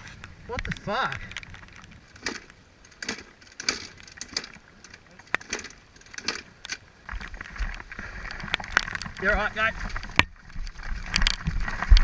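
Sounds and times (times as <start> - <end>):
sharp clicks and knocks: 0.5 - 12.0.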